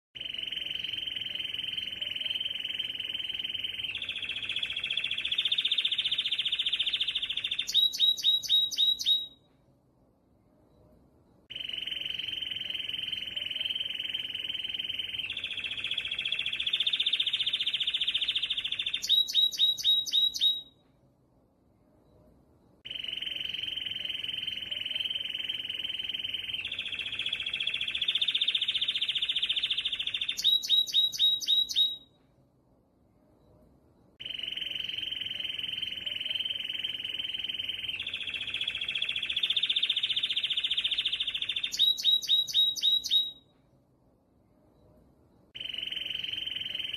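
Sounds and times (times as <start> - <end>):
canary trilling and chirping: 0.2 - 9.4, 11.5 - 20.7, 22.9 - 32.1, 34.2 - 43.4.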